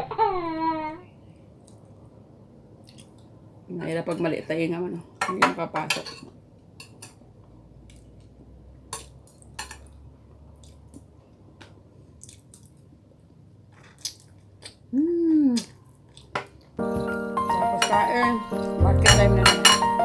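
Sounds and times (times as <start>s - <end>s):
quiet chewing: 2.8s - 3.3s, 9.0s - 17.1s
cutlery and dishes clicking: 5.2s - 7.2s, 9.0s - 9.9s, 17.8s - 18.1s, 19.1s - 20.0s.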